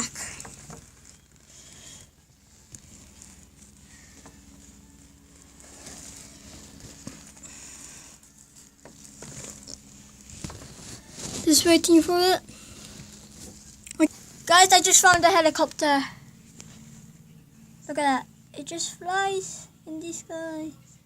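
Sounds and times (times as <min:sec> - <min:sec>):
distant helicopter drone: 0:11.5 - 0:20.9.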